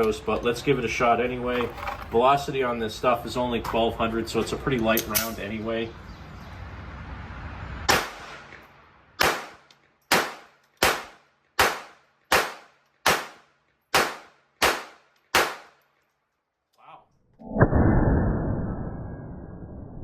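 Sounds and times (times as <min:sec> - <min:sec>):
pistol shots: 0:09.2 - 0:15.8.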